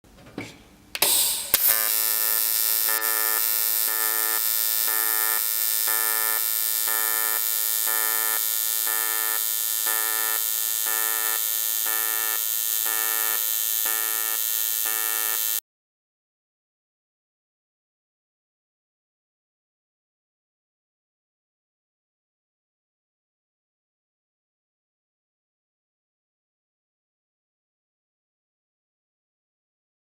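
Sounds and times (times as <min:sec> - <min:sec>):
welding arc buzzing: 0:00.9 - 0:15.6.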